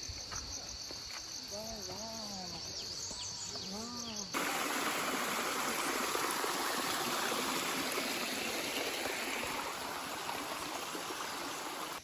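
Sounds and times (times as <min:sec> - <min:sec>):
stream water rushing: 0:04.4 - 0:12.0.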